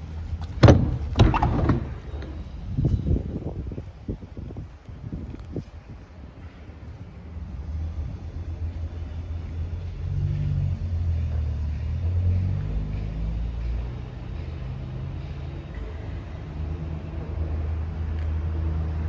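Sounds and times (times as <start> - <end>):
van engine rumbling: 0.0 - 19.0.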